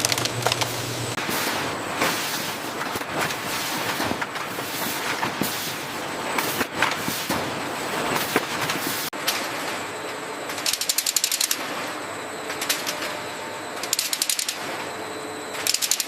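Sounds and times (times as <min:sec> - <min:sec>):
machinery clattering: 0:00.0 - 0:11.7.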